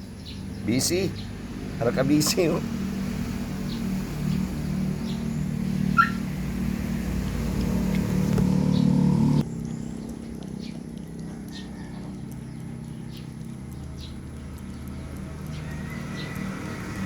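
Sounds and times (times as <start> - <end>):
low motor hum: 0.0 - 17.0
puppies crunching bones: 9.5 - 17.0.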